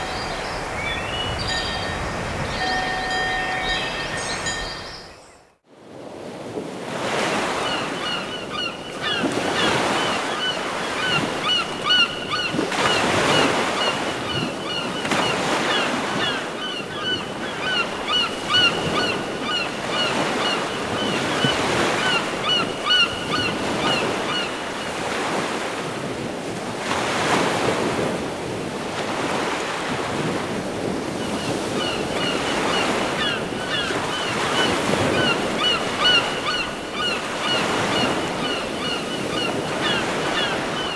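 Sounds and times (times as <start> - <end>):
ocean surf ringtone: 0.0 - 5.6, 31.5 - 40.9.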